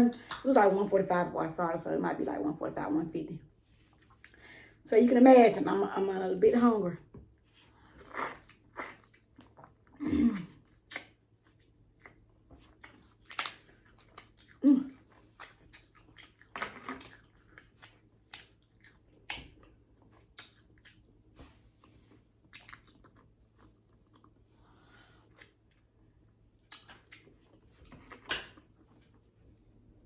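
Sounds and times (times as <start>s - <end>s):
person chewing crab: 7.8s - 29.0s
crab shell crunching: 12.8s - 14.6s.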